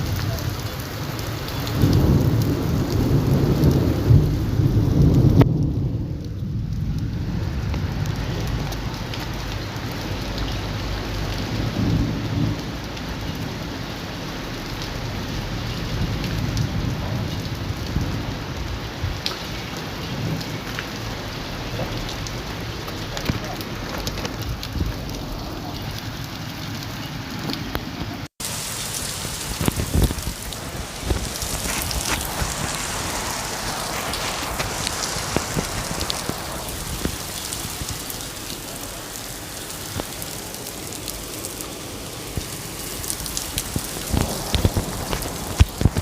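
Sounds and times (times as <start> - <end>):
heavy rain on a surface: 0.0 - 46.0.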